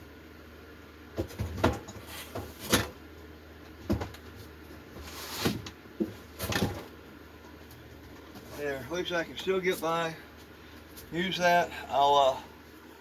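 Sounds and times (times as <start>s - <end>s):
objects knocking and bumping: 1.1s - 3.0s, 3.7s - 4.4s, 5.4s - 7.0s.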